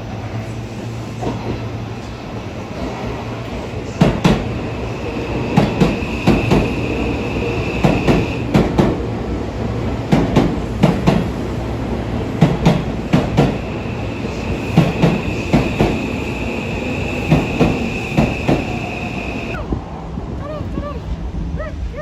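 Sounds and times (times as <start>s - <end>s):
train rumble: 0.0s - 22.0s
train wheels clickety-clack: 1.2s - 4.6s, 5.3s - 9.1s, 9.7s - 13.7s, 14.4s - 16.2s, 17.1s - 19.6s.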